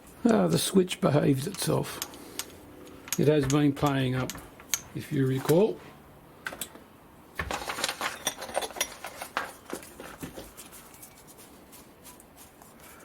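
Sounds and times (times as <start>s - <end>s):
light metallic clinking: 1.4s - 5.6s.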